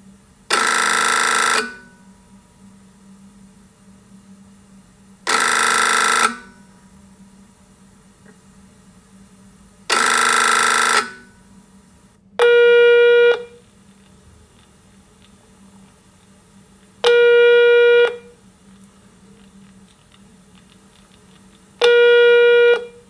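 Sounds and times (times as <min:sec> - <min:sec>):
faint steady hum: 0:00.0 - 0:23.0
telephone ringing: 0:00.5 - 0:02.0, 0:05.3 - 0:06.7, 0:09.9 - 0:11.4, 0:12.4 - 0:13.6, 0:17.1 - 0:18.3, 0:21.8 - 0:23.0.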